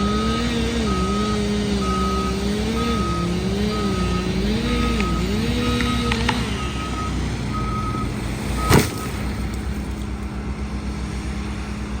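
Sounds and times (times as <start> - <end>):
reversing alarm beeping: 0.0 - 9.4
diesel machine running: 0.0 - 12.0
loud thump: 8.6 - 9.4.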